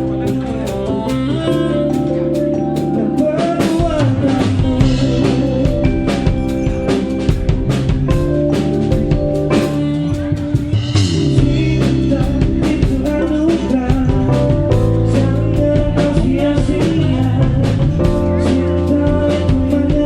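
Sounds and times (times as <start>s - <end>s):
drum kit steady beat: 0.0s - 20.0s
live band playing: 0.0s - 20.0s.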